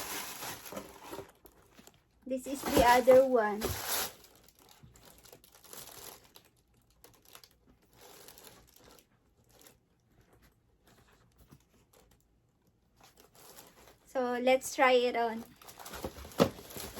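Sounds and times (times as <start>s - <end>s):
packaging crinkling: 0.0s - 9.8s, 13.0s - 14.1s, 15.5s - 16.9s.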